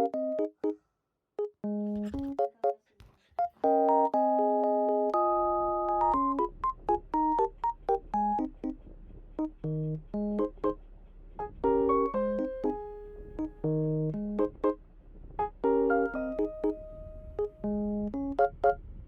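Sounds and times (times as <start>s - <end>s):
bouncy keyboard tune: 0.0s - 0.8s, 1.4s - 2.8s, 3.4s - 10.8s, 11.4s - 19.0s
faint low hum: 5.1s - 19.0s.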